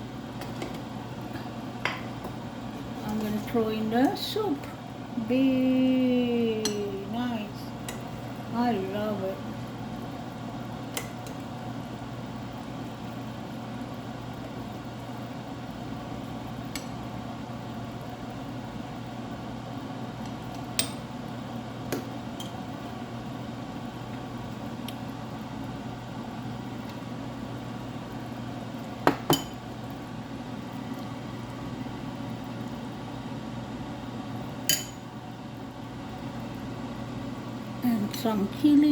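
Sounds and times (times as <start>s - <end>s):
steady low hum: 0.0s - 38.9s
utensils clinking against dishes: 34.7s - 35.0s.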